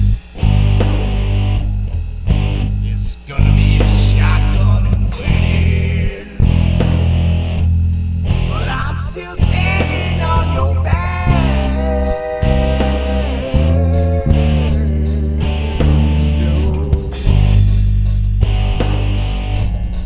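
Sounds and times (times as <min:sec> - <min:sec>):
heavy guitar chords: 0:00.0 - 0:20.0
man singing: 0:02.8 - 0:06.9, 0:08.5 - 0:17.8.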